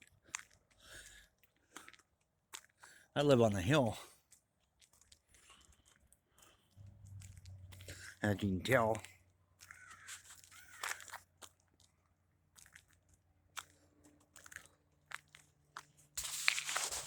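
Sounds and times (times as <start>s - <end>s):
crunching and rustling: 9.0s - 17.0s.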